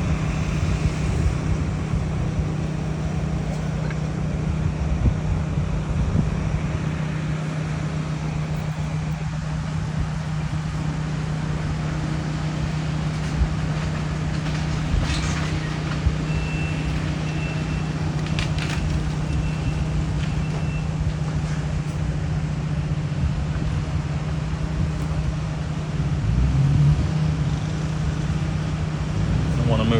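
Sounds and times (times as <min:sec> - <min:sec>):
diesel engine running: 0:00.0 - 0:29.9.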